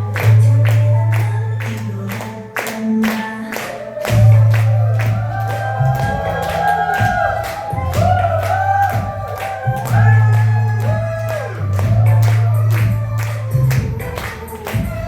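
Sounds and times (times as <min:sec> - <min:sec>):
sung melody over bass and beat: 0:00.0 - 0:15.0.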